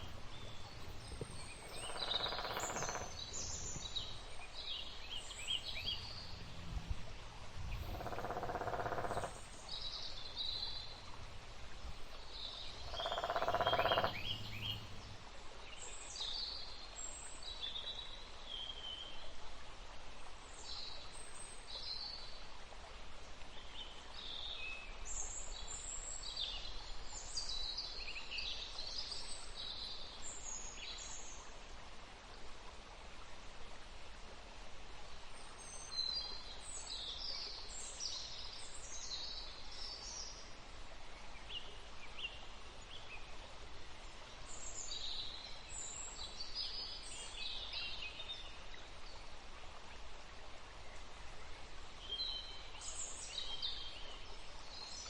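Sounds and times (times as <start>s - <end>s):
small birds chirping: 0.0s - 15.2s.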